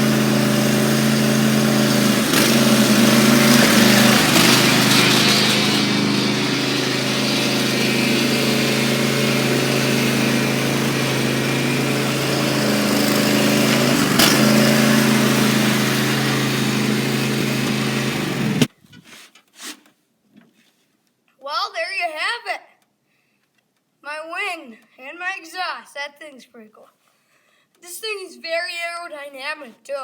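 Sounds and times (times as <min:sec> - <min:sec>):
lawn mower engine running: 0:00.0 - 0:18.7.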